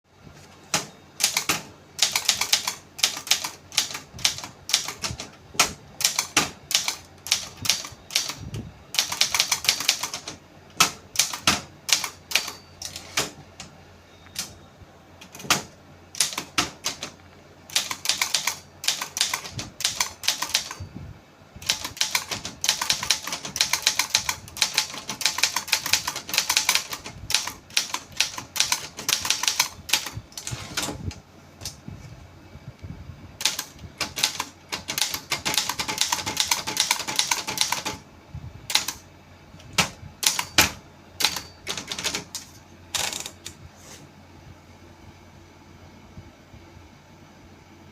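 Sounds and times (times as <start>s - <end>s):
typewriter keys clacking: 0.7s - 8.4s, 9.0s - 13.4s, 15.2s - 20.8s, 21.6s - 31.0s, 33.4s - 38.0s, 38.7s - 39.0s, 39.8s - 43.5s.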